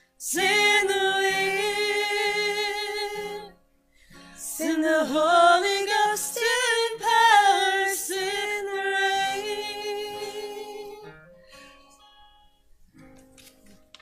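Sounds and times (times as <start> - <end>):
women singing gospel: 0.2 - 3.6, 4.4 - 11.1.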